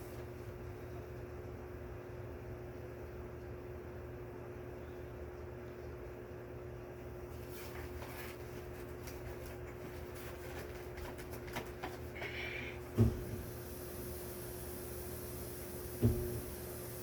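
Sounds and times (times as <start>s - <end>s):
dull thump: 16.0s - 16.4s.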